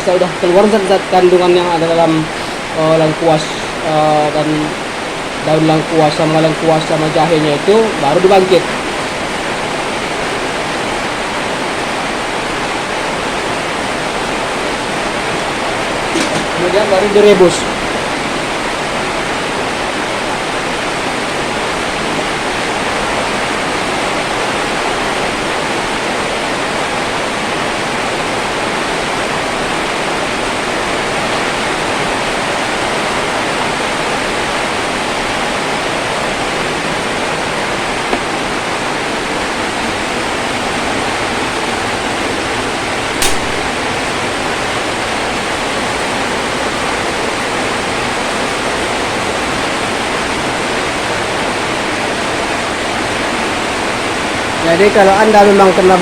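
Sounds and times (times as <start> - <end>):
pot of water boiling hiss: 0.0 - 11.2
sharp click: 16.2 - 16.6, 43.2 - 43.8.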